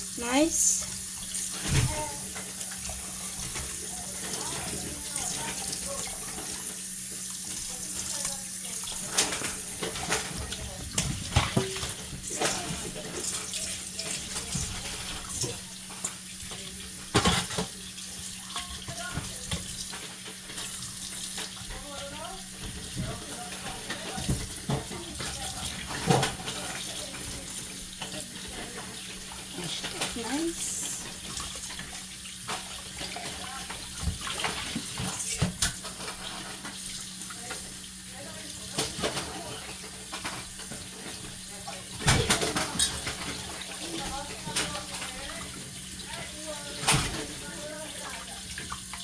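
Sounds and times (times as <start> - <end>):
tap running into sink: 0.8 - 28.5, 30.8 - 37.7.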